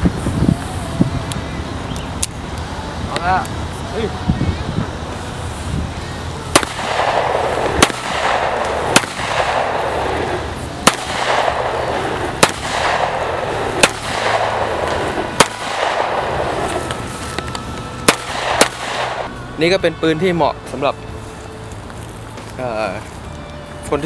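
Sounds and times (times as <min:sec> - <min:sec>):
pistol shots: 0:06.5 - 0:17.0, 0:18.0 - 0:19.3.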